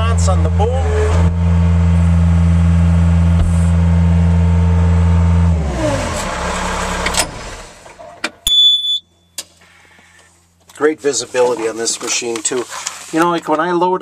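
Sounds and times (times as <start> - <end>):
diesel engine running at high revs: 0.0 - 8.3
short high electronic beep: 8.4 - 9.4.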